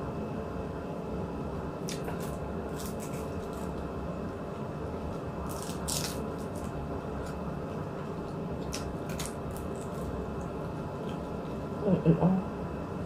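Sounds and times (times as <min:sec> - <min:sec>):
low room hum: 0:00.0 - 0:13.0
crisp chewing crackles: 0:01.8 - 0:11.8.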